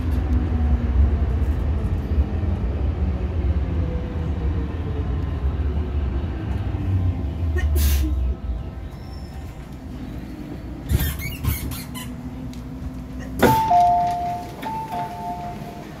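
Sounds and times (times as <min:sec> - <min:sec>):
train rumble: 0:00.0 - 0:16.0
two-tone door chime: 0:13.4 - 0:16.0.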